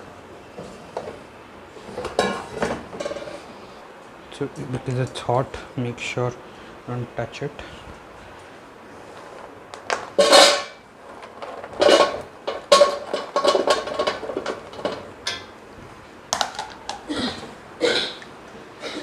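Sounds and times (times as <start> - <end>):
fries clattering into metal basket: 9.9 - 15.5.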